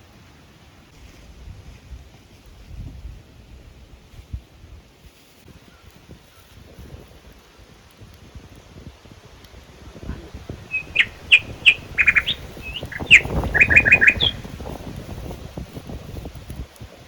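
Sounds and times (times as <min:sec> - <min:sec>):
low rustling noise: 0:09.9 - 0:17.0
bird chirping: 0:10.4 - 0:15.6.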